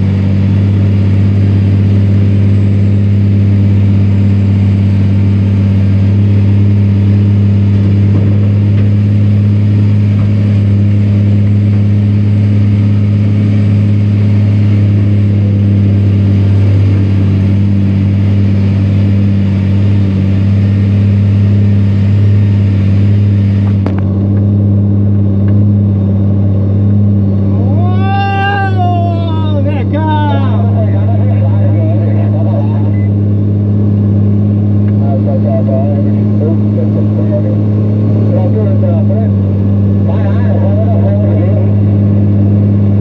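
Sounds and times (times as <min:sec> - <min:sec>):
truck diesel engine roaring: 0:00.0 - 0:43.0.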